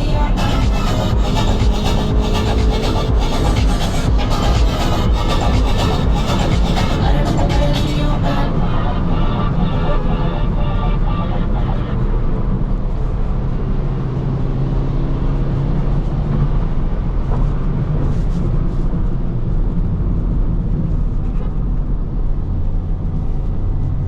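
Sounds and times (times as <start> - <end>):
car engine running: 0.0 - 14.0
tyre and road noise: 0.0 - 24.0.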